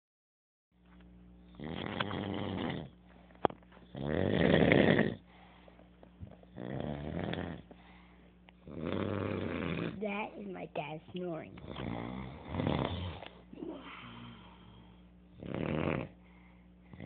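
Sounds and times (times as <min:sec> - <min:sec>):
man snoring: 0:01.5 - 0:03.0, 0:03.9 - 0:05.3, 0:06.5 - 0:07.7, 0:08.6 - 0:10.0, 0:11.6 - 0:16.2.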